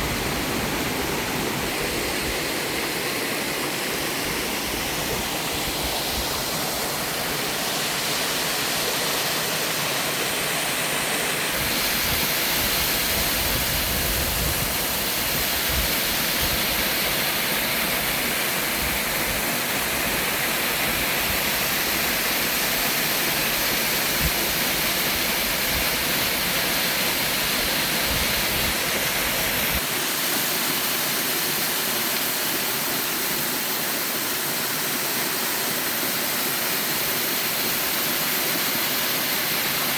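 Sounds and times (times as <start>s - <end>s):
waterfall pouring: 2.1s - 33.7s.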